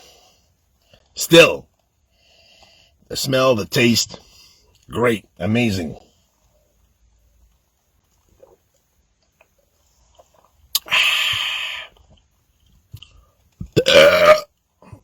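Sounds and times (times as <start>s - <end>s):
man belching: 13.7s - 15.0s.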